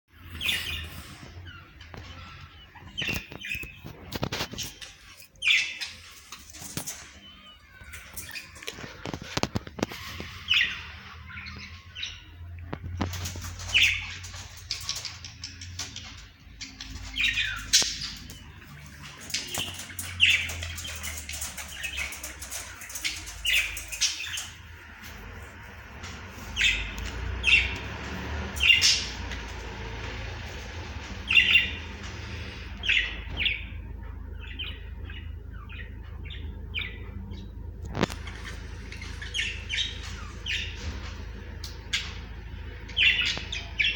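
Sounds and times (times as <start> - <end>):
budgerigars chirping and squawking: 0.1 - 43.9
clicks and rattles on cage: 19.0 - 24.6.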